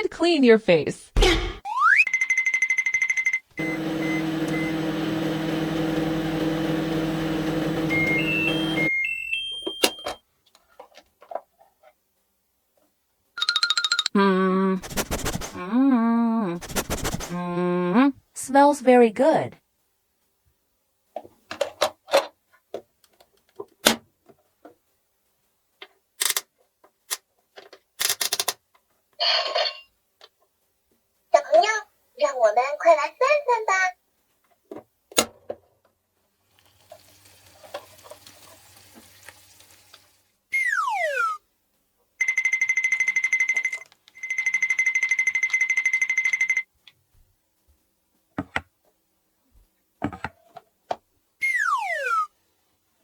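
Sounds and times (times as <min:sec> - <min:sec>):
fast-pulsing high beep: 0:01.7 - 0:04.2
rising beep tones: 0:01.7 - 0:04.7, 0:51.4 - 0:52.3
toy microwave hum: 0:02.1 - 0:10.2, 0:42.2 - 0:46.6
plastic toy pieces clicking: 0:26.2 - 0:26.5, 0:28.0 - 0:28.6.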